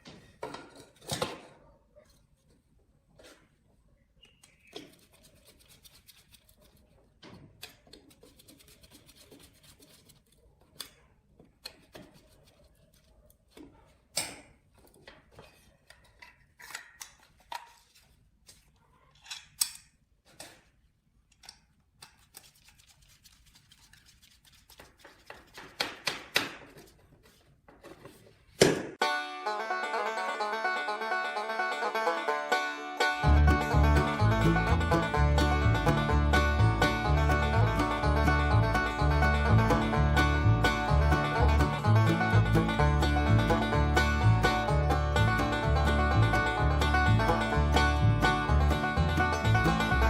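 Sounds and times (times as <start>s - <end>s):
clicks snips and knocks: 10.1s - 12.6s.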